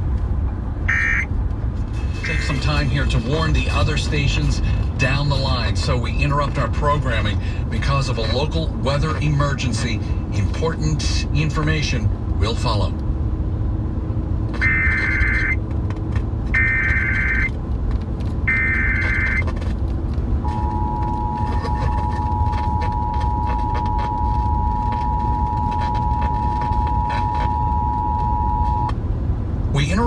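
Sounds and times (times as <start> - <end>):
car road noise: 0.0 - 30.0
buzzing digital header tones: 0.9 - 1.3, 14.6 - 15.6, 16.6 - 17.5, 18.5 - 19.4, 20.4 - 28.9
two-tone attention signal: 0.9 - 1.3, 14.6 - 15.6, 16.6 - 17.5, 18.5 - 19.4, 20.5 - 28.9.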